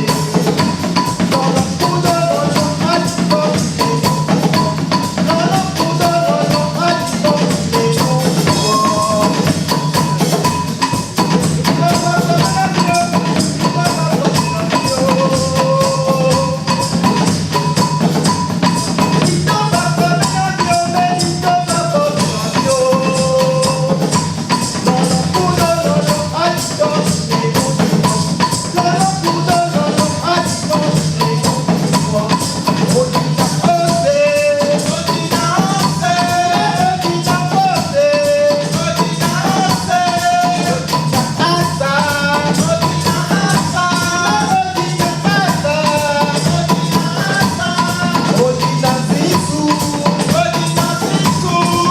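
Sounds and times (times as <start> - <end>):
song with melody and percussion: 0.0 - 51.9
tambourine-like shaking: 0.0 - 51.9.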